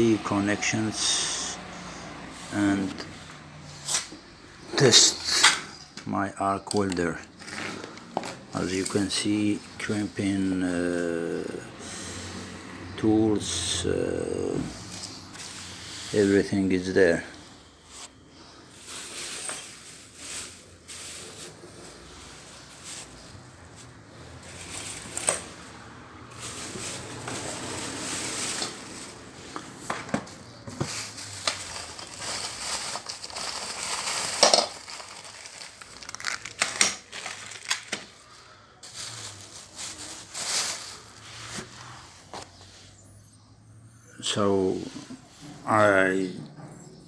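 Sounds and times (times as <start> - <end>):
rustling and crinkling: 17.4 - 42.8.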